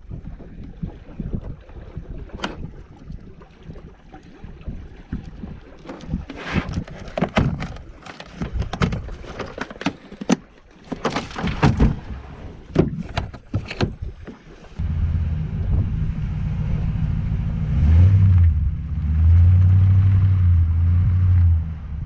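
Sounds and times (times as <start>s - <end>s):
paddle splashing water: 0.0s - 15.7s.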